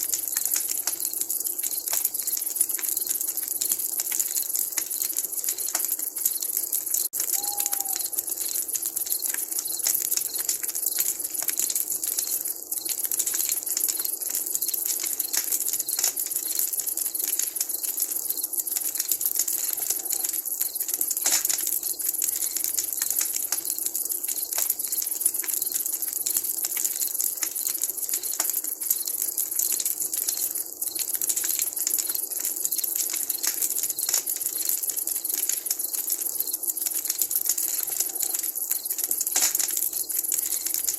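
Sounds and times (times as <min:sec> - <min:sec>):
campfire crackling and popping: 0:00.0 - 0:40.9
faint short call: 0:07.4 - 0:08.2.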